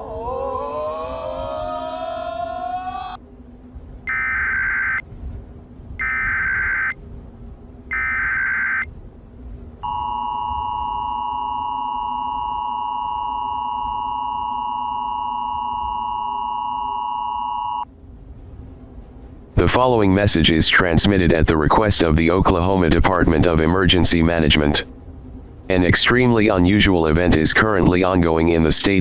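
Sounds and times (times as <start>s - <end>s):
data bursts: 4.1s - 5.0s, 6.0s - 7.0s, 7.9s - 8.9s
two-tone attention signal: 4.1s - 5.0s, 6.0s - 7.0s, 7.9s - 8.9s.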